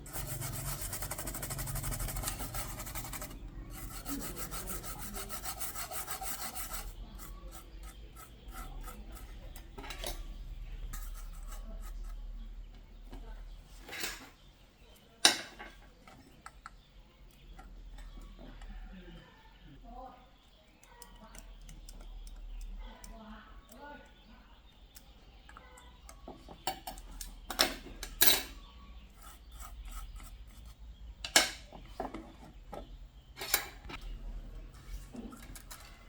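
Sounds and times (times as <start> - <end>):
scattered ticks and clicks: 20.8 - 23.8.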